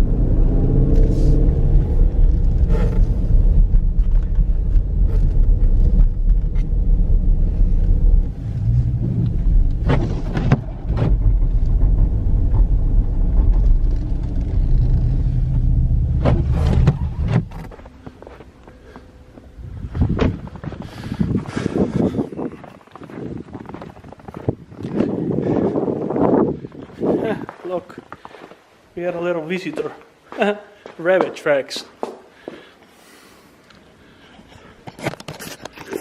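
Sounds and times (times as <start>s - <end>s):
engine deep rumble: 0.0s - 27.2s.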